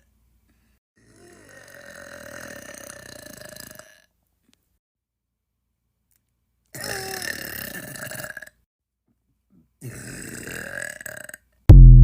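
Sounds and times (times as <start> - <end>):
long burp: 1.0 - 4.1, 6.8 - 8.6, 9.8 - 11.4.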